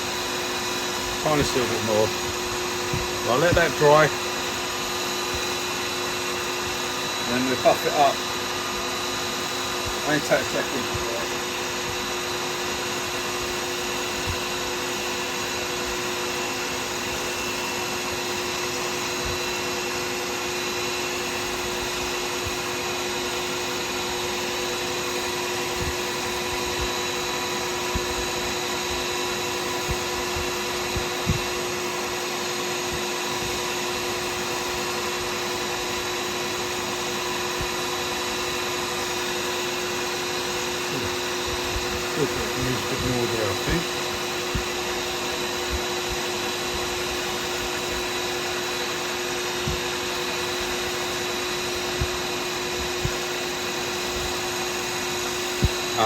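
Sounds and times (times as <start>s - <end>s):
lathe motor whining: 0.0s - 56.0s.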